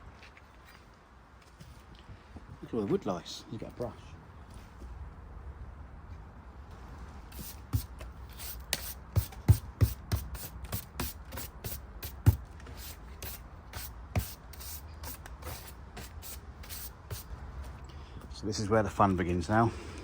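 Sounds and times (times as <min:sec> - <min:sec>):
brush sweeping wood: 0:07.3 - 0:17.7.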